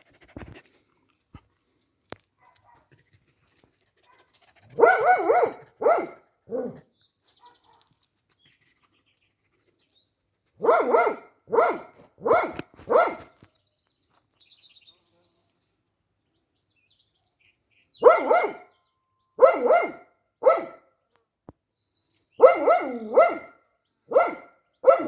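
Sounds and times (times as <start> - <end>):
dog barking: 2.4 - 2.9, 4.8 - 7.9, 10.6 - 13.3, 18.0 - 18.8, 19.4 - 20.9, 22.4 - 25.0.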